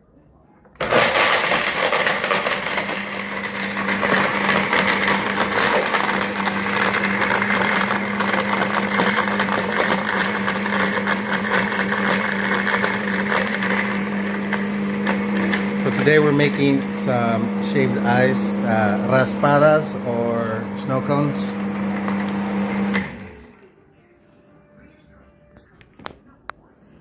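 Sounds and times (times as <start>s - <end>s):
ice crackling in blender jar: 0.8s - 20.0s
blender motor hum: 0.8s - 23.6s.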